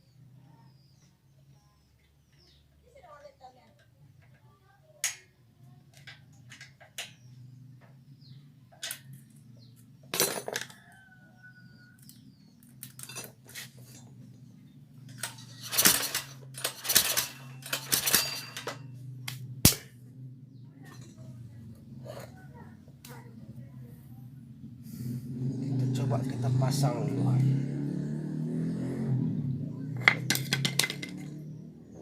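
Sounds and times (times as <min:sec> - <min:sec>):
metal tools clinking and scraping: 0:10.1 - 0:10.9, 0:12.0 - 0:14.2, 0:15.0 - 0:19.0, 0:30.0 - 0:31.4.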